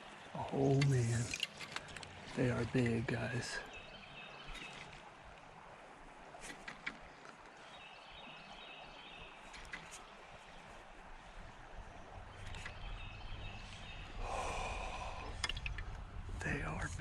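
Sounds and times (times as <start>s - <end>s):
faint bird chirps: 0.0s - 5.0s, 6.4s - 17.0s
small clicks: 15.3s - 16.0s.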